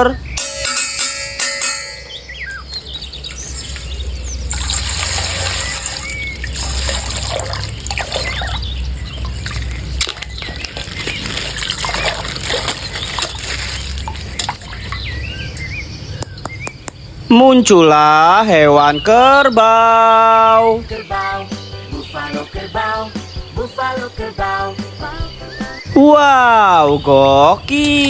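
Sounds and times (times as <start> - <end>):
water pouring and trickling: 2.6 - 15.7.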